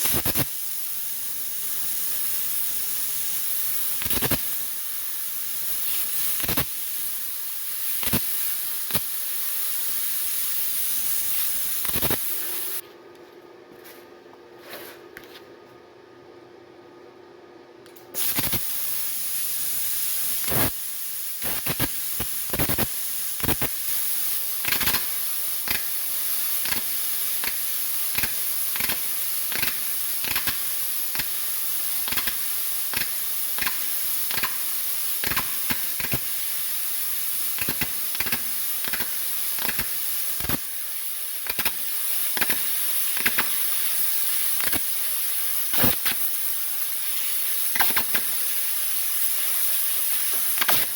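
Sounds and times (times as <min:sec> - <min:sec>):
crackles and pops of cutting metal: 0:00.0 - 0:12.8, 0:17.9 - 0:50.9
plasma cutter hissing: 0:00.0 - 0:12.8, 0:18.1 - 0:50.9.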